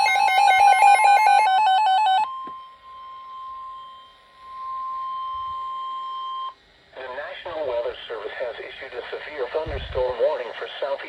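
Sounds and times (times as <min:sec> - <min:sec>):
buzzy two-pitch warble: 0:00.0 - 0:06.5.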